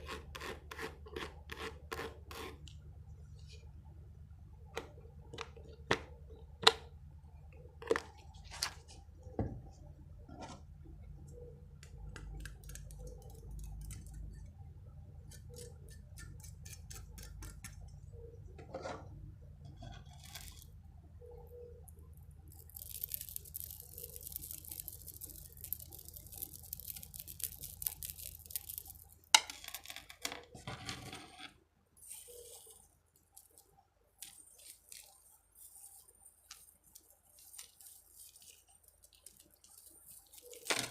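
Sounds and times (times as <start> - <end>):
light handling of small objects: 7.4 - 16.4, 21.8 - 40.9
rustling: 32.0 - 40.9.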